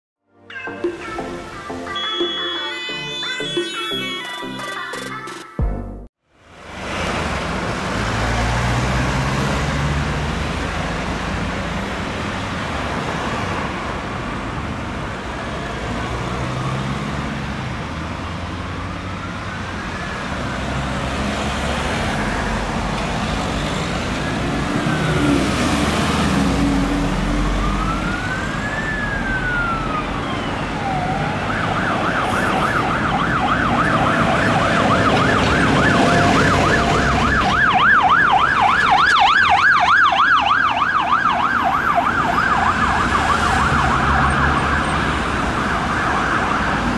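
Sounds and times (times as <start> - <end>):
emergency vehicle siren: 0.6 - 5.1, 14.5 - 46.9
traffic rumble: 6.4 - 46.9.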